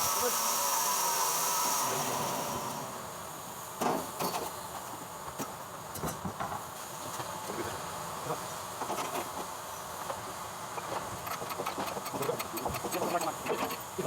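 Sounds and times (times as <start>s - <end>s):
machine high whine: 0.0s - 3.1s.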